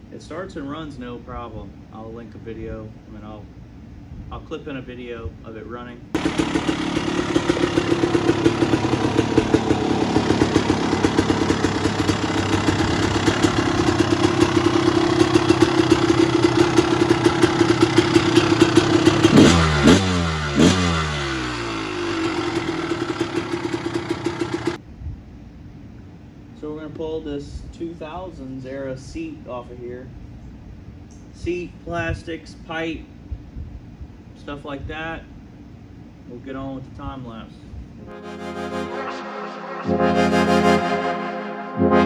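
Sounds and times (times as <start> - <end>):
two-stroke engine idling and revving: 6.2 - 24.8.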